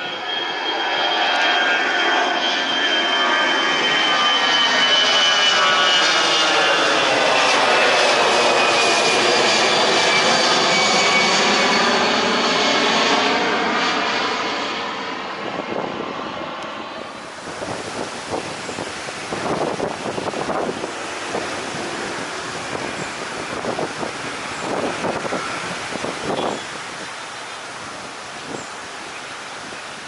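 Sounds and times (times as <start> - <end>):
jet airliner engine roar: 0.0 - 30.0
wind buffeting microphone: 15.1 - 30.0.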